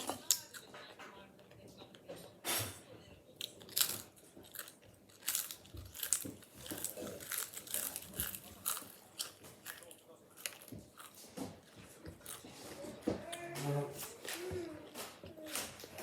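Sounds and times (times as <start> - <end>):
chips crunching while chewed: 3.4 - 12.6.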